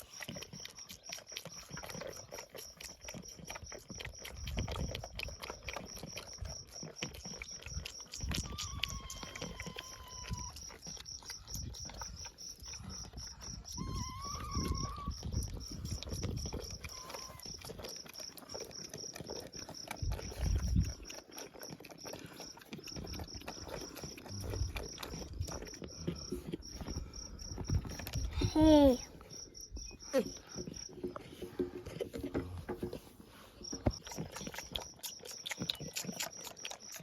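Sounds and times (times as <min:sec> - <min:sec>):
insect chirping: 0:00.0 - 0:37.0
low thumps and rumbles: 0:24.4 - 0:28.5.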